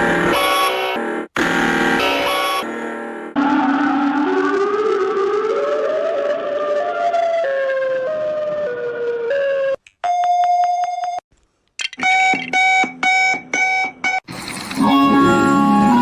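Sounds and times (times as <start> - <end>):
steady buzzing tone: 0.0 - 3.4
stepping electronic melody: 0.0 - 9.7.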